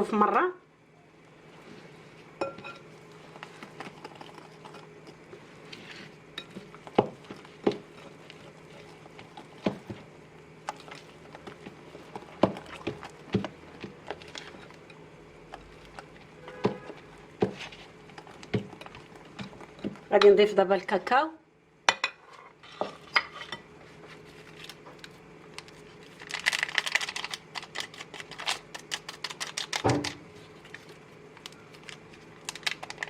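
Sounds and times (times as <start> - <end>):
faint steady hum: 0.0 - 33.0
utensil knocking mixing bowl: 11.4 - 14.2, 18.3 - 20.4.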